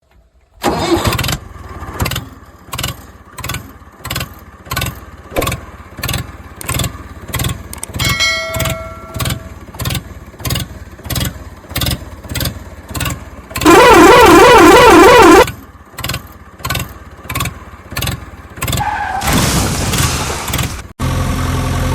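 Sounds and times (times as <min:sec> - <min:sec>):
engine chugging: 0:00.2 - 0:19.1
horn-like tone: 0:13.6 - 0:15.5.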